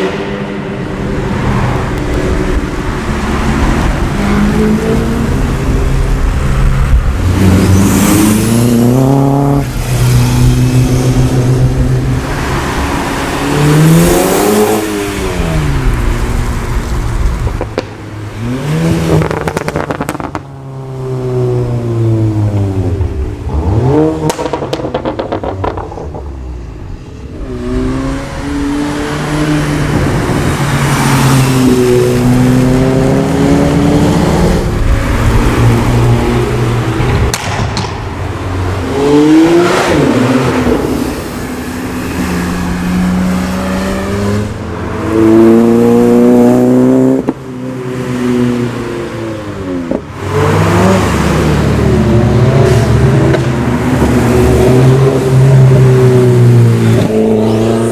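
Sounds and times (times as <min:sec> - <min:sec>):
car engines revving hard: 0:00.0 - 0:57.9
cars passing at speed: 0:00.0 - 0:57.9
sharp cracks: 0:37.0 - 0:38.8.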